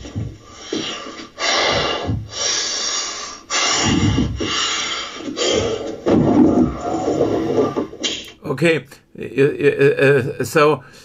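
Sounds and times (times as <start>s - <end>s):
man breathing hard: 0.2s - 6.0s.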